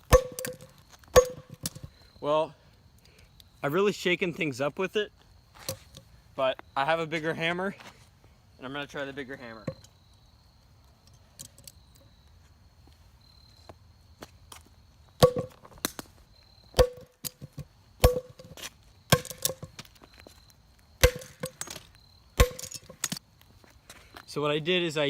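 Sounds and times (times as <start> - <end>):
heavy metallic hammer strikes: 0.0 - 0.6, 1.2 - 1.7.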